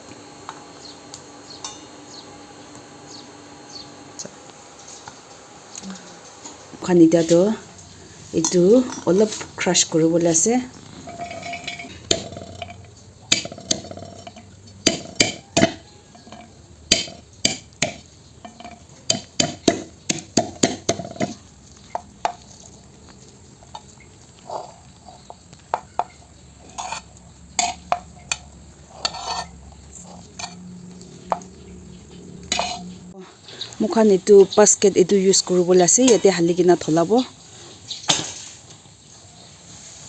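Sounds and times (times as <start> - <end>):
utensil knocking against dish: 13.3 - 14.3, 14.9 - 22.4.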